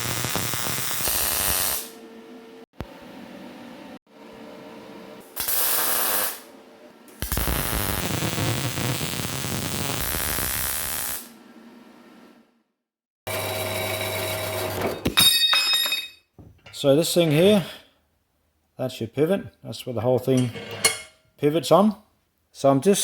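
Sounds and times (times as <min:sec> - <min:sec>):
welding arc crackling: 0:00.0 - 0:01.9, 0:05.4 - 0:06.4, 0:07.2 - 0:11.3.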